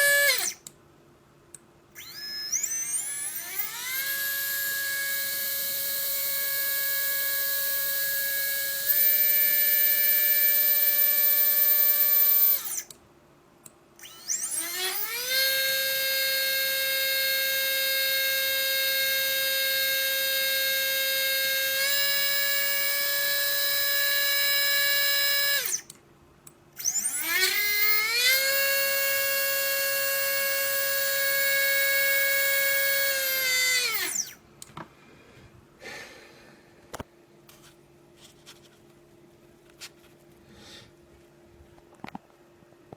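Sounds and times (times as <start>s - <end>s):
drone motor whining: 0.0s - 0.6s, 2.0s - 12.9s, 14.0s - 25.8s, 26.8s - 34.4s.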